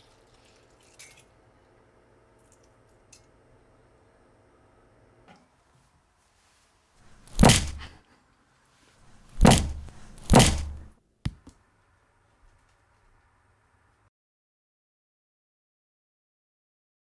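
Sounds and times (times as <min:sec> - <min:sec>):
heavy thuds: 0:07.1 - 0:07.9, 0:09.1 - 0:10.9.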